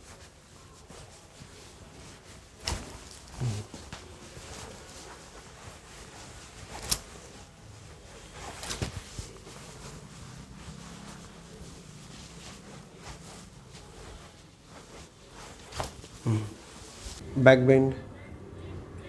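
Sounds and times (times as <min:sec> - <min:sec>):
faint background noise: 0:00.0 - 0:19.0.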